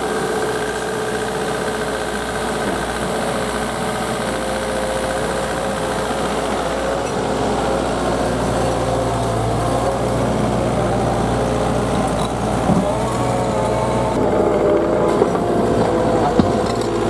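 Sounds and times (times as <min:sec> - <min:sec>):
diesel engine running: 0:00.0 - 0:17.0.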